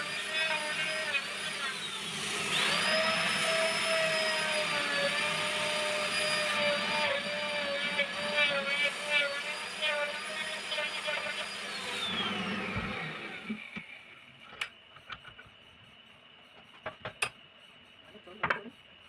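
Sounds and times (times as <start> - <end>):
lathe motor whine winding down: 0.0 - 14.4.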